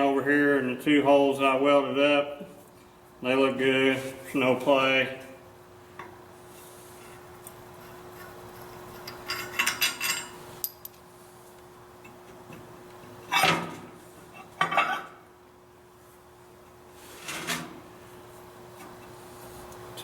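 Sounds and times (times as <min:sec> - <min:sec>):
steady low hum: 0:00.0 - 0:20.0
steel pin clinking and scraping: 0:07.8 - 0:11.0.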